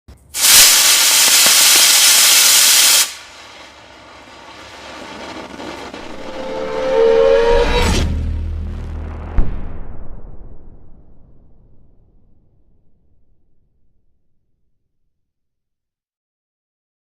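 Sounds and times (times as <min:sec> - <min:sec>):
rocket engine hissing: 0:00.4 - 0:07.2
low rumble: 0:03.8 - 0:14.1.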